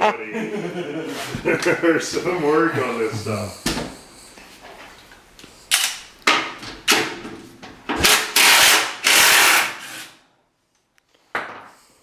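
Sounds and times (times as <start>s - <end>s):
power tool rasping on fasteners: 8.0s - 10.2s.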